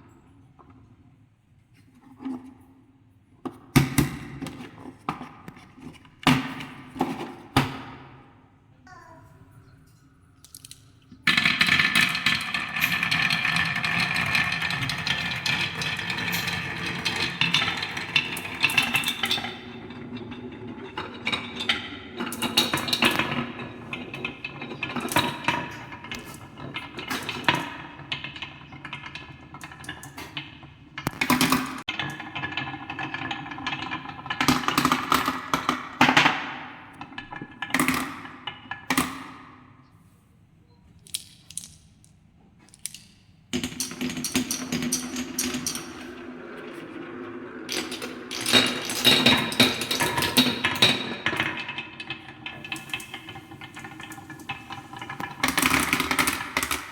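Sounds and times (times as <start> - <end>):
marbles rolling down wooden run: 11.2 - 36.0, 43.6 - 56.9.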